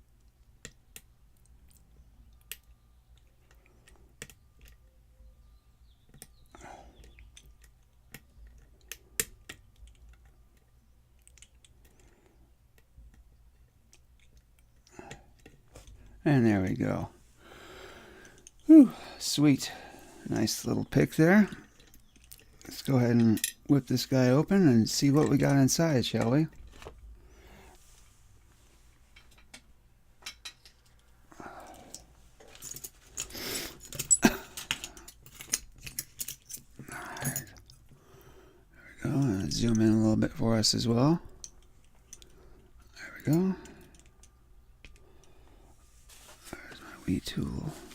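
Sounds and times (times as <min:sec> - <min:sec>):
metal lock clicks and jangles: 0:21.6 - 0:23.7, 0:31.9 - 0:37.8.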